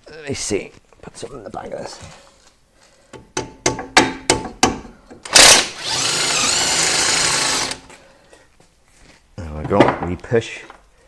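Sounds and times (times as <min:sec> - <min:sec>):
electric power tool running: 0:05.3 - 0:07.9.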